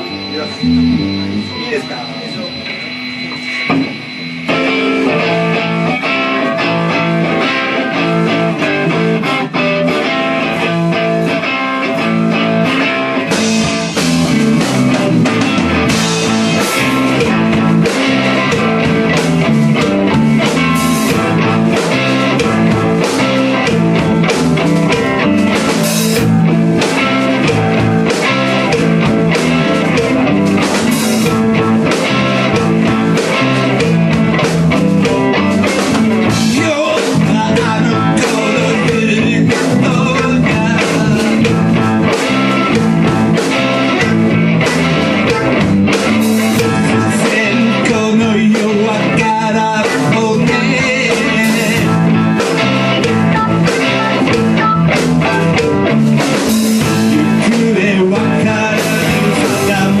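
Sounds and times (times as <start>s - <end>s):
rock guitar: 0.0s - 60.0s
person singing: 36.2s - 41.9s, 46.2s - 55.8s, 56.6s - 60.0s.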